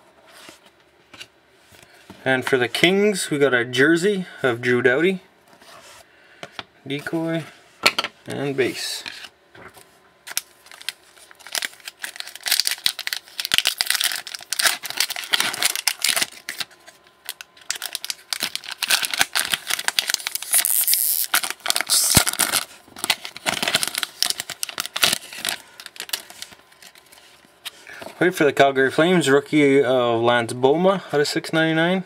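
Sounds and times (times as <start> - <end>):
wrappers torn and crinkled: 10.3 - 27.2.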